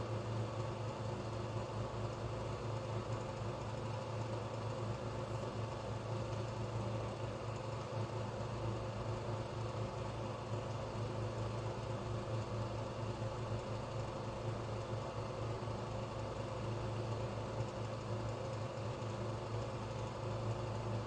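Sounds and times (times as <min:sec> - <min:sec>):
low mechanical hum: 0:00.0 - 0:21.0.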